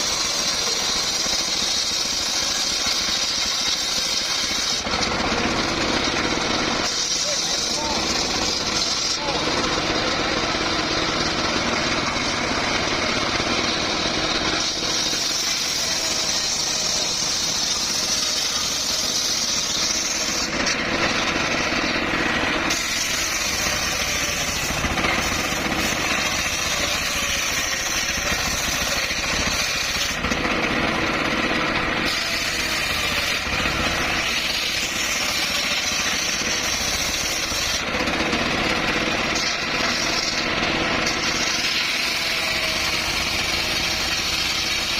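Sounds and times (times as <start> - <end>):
circular saw cutting wood: 0.0 - 44.9.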